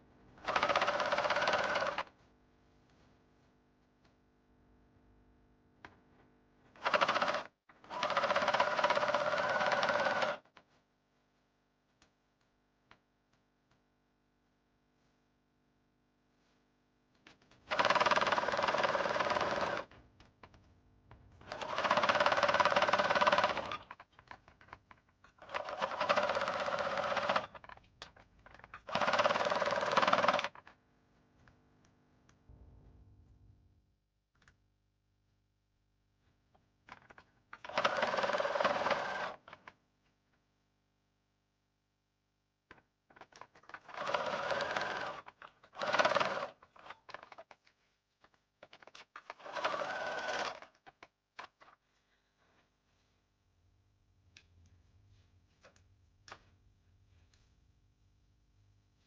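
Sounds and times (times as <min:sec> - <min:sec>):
sewing machine stitching: 0:00.4 - 0:02.1, 0:06.8 - 0:10.4, 0:17.7 - 0:19.9, 0:21.4 - 0:24.2, 0:25.4 - 0:27.8, 0:28.5 - 0:30.6, 0:37.6 - 0:39.7, 0:43.7 - 0:47.3, 0:49.2 - 0:50.8.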